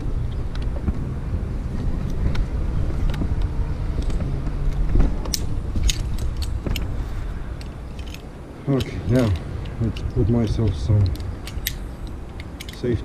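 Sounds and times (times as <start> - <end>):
wind rumbling on microphone: 0.0 - 13.0
sharp clicks and clinks: 7.6 - 13.0.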